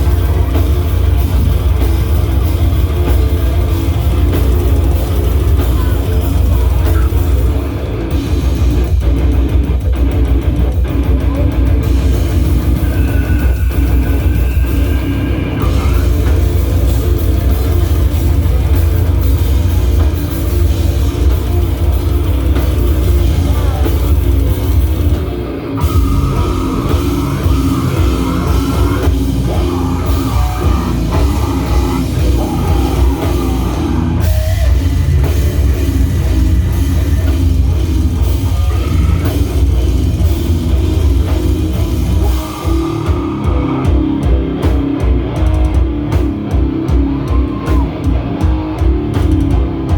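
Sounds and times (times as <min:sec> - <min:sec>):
bass guitar: 0:00.0 - 0:49.9
distorted electric guitar: 0:00.0 - 0:49.9
drum kit: 0:00.0 - 0:49.9.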